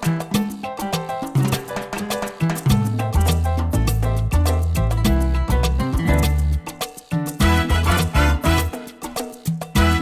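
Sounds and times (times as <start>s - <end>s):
salsa-like music: 0.0s - 10.0s
deep bass: 2.7s - 6.6s, 7.4s - 8.7s.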